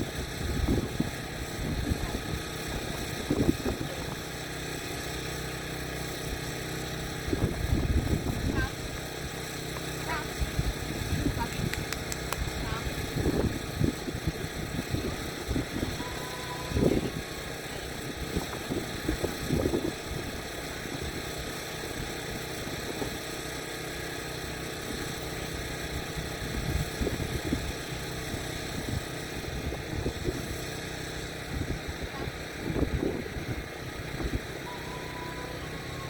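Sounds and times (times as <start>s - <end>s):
wind buffeting microphone: 0.0s - 4.2s, 7.2s - 9.0s, 10.0s - 21.3s, 31.4s - 34.7s.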